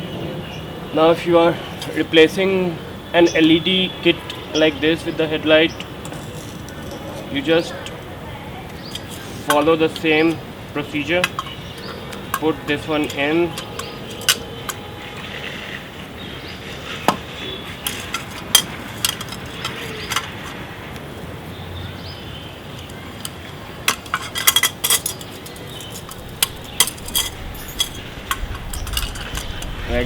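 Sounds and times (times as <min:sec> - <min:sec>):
metallic clicks and clinks: 0:17.8 - 0:20.5, 0:23.2 - 0:29.7.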